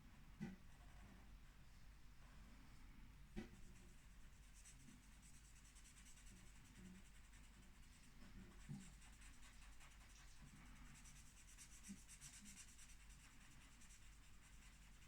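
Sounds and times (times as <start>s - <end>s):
marker scratching on paper: 4.5s - 10.4s, 11.0s - 15.0s.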